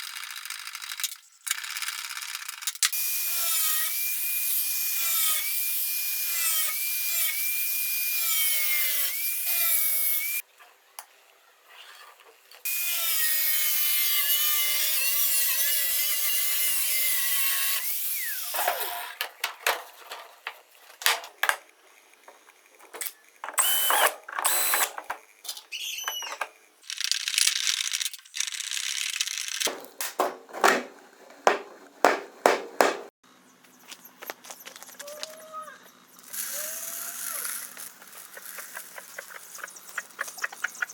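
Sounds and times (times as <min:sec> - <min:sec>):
electric drill whining: 0:21.8 - 0:25.2.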